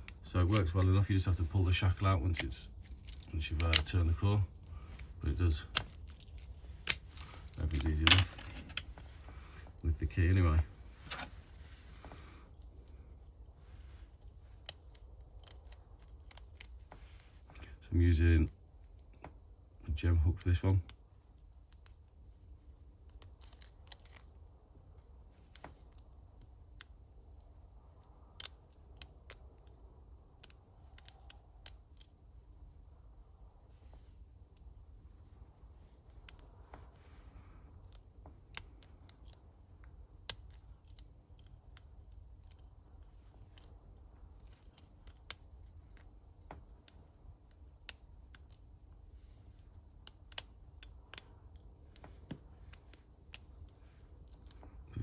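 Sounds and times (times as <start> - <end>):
lock pick clicking and scraping: 2.2 - 9.8, 14.0 - 17.6, 23.0 - 32.3, 34.1 - 37.0, 37.7 - 54.8.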